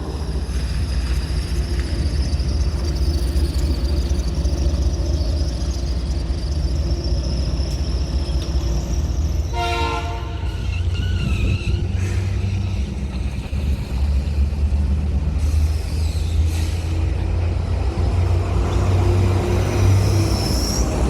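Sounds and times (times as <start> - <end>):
diesel locomotive rumble: 0.0 - 21.0
high squeal: 0.2 - 14.4, 19.5 - 21.0
locomotive air horn blast: 9.5 - 10.7.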